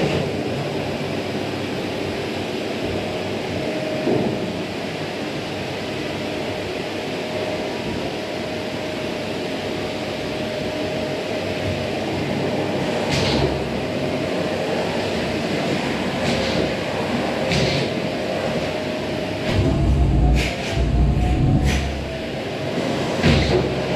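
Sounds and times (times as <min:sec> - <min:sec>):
vacuum cleaner running: 0:05.8 - 0:23.9.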